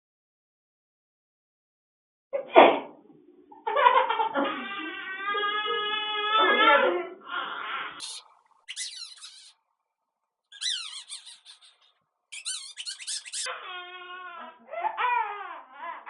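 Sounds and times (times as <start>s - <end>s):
baby crying: 8.0s - 9.5s, 10.6s - 11.8s, 12.4s - 16.0s
newborn baby squeaking: 8.0s - 9.6s, 10.5s - 14.2s.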